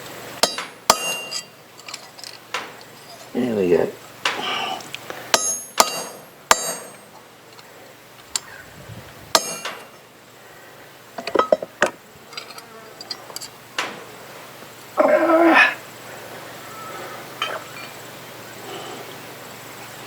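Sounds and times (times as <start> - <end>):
hammer and chisel striking metal: 0.4 - 3.3, 5.3 - 7.1, 9.4 - 9.9.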